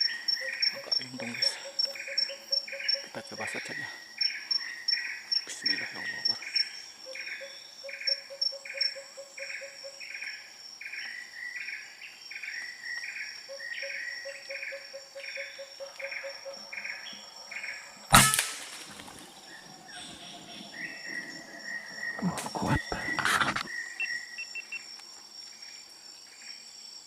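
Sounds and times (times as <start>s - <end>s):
insects calling in pulses: 0.0s - 27.0s
air rifle shot: 18.1s - 19.1s.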